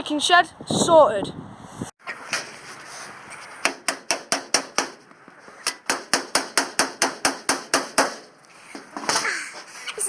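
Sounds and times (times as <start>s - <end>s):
hammer strikes: 3.6s - 8.4s.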